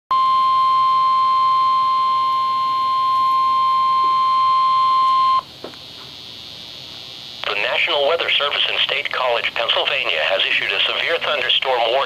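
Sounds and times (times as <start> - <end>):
steady warning alarm tone: 0.1 - 5.5.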